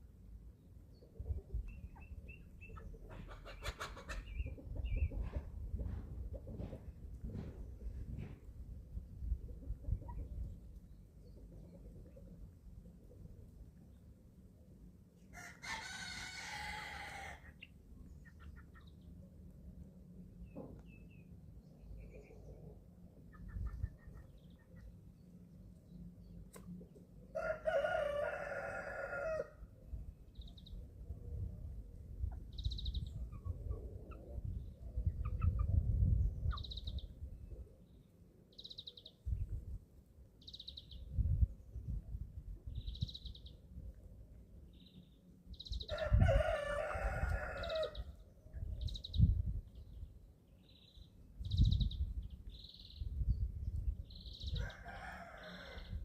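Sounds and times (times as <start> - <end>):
chicks peeping: 1.0 - 8.2, 9.6 - 12.3, 17.2 - 19.2, 23.2 - 25.1, 32.1 - 37.2
rooster crowing: 15.4 - 17.4, 27.4 - 29.6, 45.9 - 48.0, 54.6 - 56.0.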